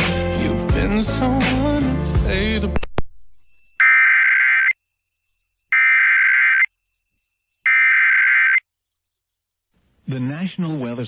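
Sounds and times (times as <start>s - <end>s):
buzzing two-tone digital data bursts: 5.7s - 6.7s, 7.7s - 8.6s.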